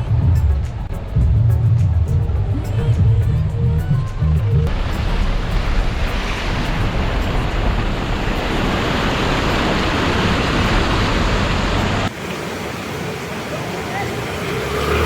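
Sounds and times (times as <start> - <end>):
waterfall roaring: 4.7 - 15.0.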